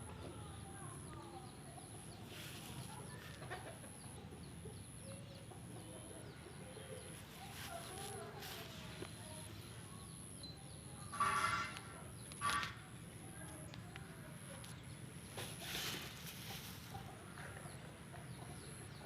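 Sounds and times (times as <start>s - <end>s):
chickens clucking: 1.8s - 9.1s, 15.3s - 19.0s.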